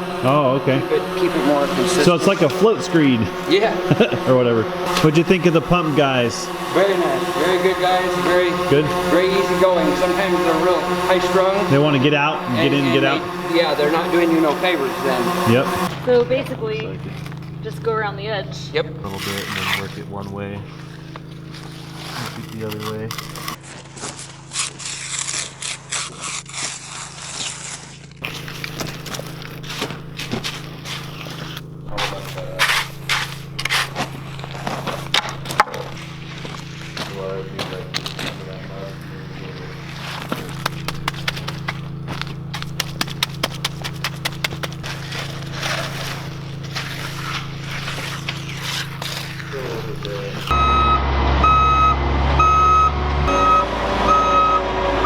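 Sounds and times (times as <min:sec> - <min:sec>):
concrete edger scraping wet concrete: 0:00.0 - 0:55.0
steady low hum: 0:00.0 - 0:55.0
sharp taps of hand tools: 0:40.6 - 0:44.8.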